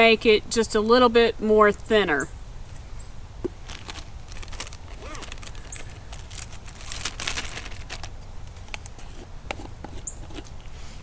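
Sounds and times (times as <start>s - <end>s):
plastic bag crinkling: 3.6s - 9.1s.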